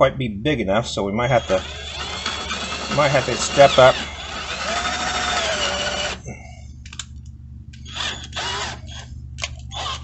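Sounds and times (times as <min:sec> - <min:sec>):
cordless drill boring wood: 0:01.4 - 0:06.2, 0:07.8 - 0:09.1, 0:09.7 - 0:10.0.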